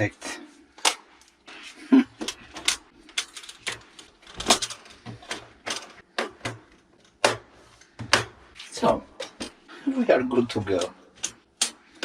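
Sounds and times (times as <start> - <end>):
handling clicks and knocks: 2.2 - 9.7, 10.6 - 12.0.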